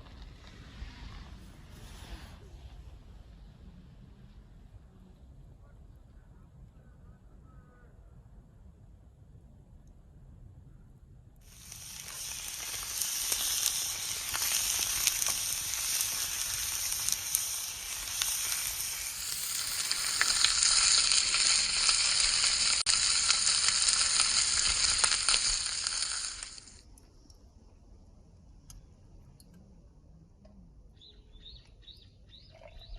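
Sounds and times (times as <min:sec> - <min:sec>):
sizzling hiss with crackles: 0:00.0 - 0:04.3, 0:11.4 - 0:27.4.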